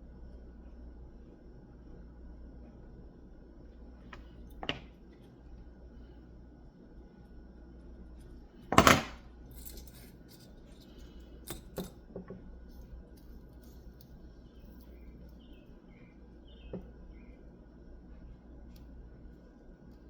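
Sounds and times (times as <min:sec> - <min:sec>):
clatter of small tools: 0:08.7 - 0:12.0.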